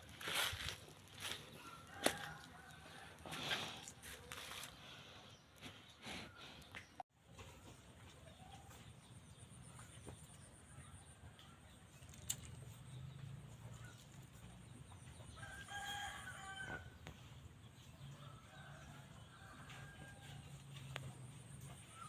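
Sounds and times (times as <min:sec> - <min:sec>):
rooster crowing: 0:01.6 - 0:03.2, 0:15.4 - 0:16.9.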